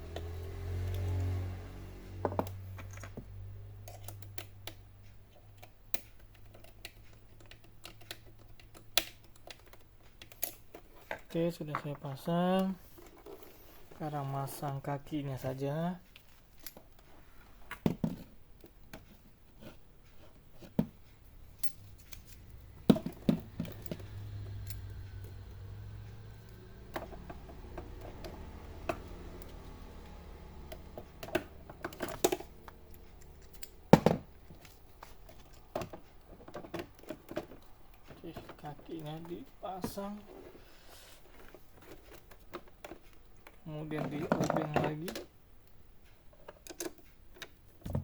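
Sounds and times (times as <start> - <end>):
plastic and metal parts clicking: 2.4 - 14.0, 17.7 - 40.1, 46.3 - 48.0.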